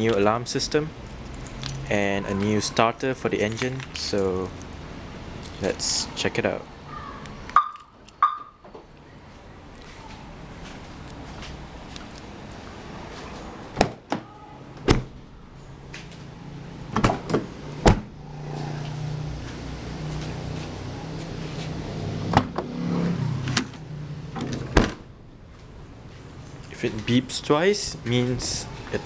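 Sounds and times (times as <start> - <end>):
car alarm chirps: 7.6 - 8.6
door locks clicking: 23.4 - 25.0.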